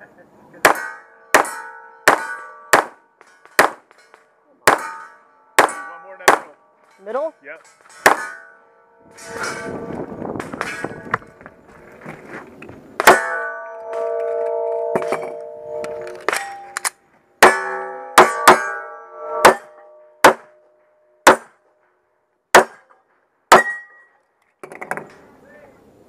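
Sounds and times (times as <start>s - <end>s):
gunshots: 0.6s - 3.9s, 4.6s - 6.6s, 8.0s - 8.4s, 19.4s - 20.5s, 21.2s - 21.6s
steel targets ringing: 0.6s - 10.0s, 13.0s - 21.5s, 23.5s - 24.2s.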